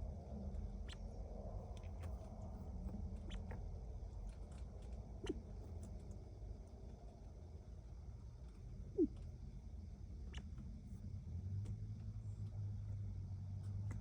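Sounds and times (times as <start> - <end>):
quail pecking and scratching: 0.6 - 6.3.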